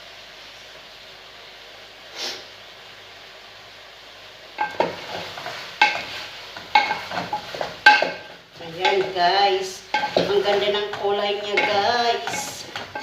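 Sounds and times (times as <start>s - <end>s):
food sizzling in a pan: 0.0s - 13.0s
utensil scraping a pan: 4.6s - 13.0s.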